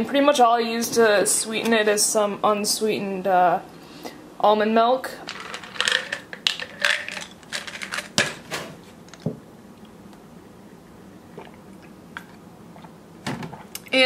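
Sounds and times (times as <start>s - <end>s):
kitchen items clicking and knocking: 5.2s - 9.4s.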